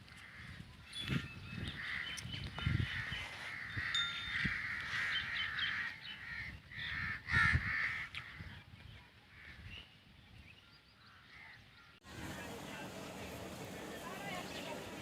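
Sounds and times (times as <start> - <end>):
crows cawing: 2.8 - 8.5.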